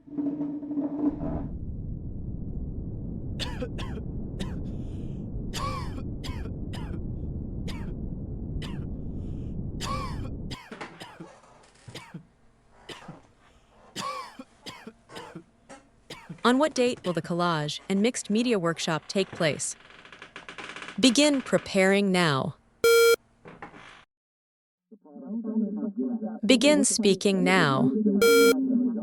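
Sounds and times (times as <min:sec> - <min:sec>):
steady low rumble: 0:01.1 - 0:10.6
coughs and throat-clearing: 0:03.4 - 0:04.6, 0:05.6 - 0:07.0, 0:07.7 - 0:07.9, 0:08.6 - 0:08.9, 0:09.8 - 0:12.3, 0:12.9 - 0:13.2, 0:14.0 - 0:15.5, 0:16.1 - 0:16.4.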